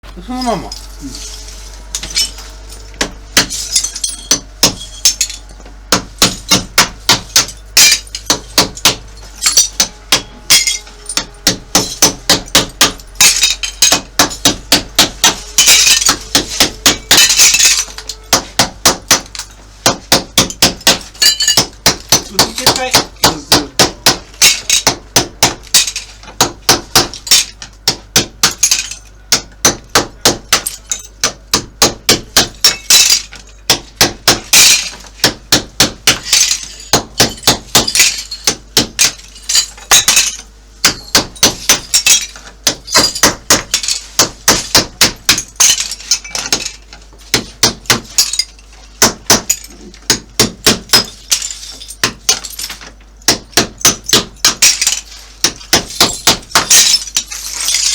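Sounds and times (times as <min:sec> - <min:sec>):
hammer striking chisel: 0:03.0 - 0:48.4, 0:49.0 - 0:57.9
tiles cracking: 0:54.6 - 0:57.9.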